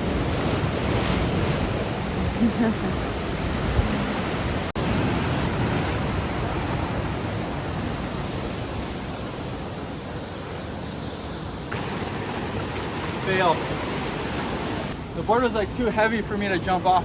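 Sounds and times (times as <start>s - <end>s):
wind buffeting microphone: 0.0s - 15.0s
ocean surf rushing: 0.0s - 17.0s.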